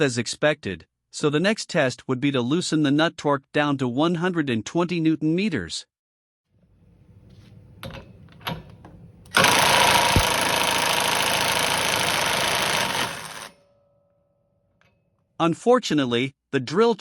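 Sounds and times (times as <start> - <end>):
cordless drill running: 9.3 - 13.6.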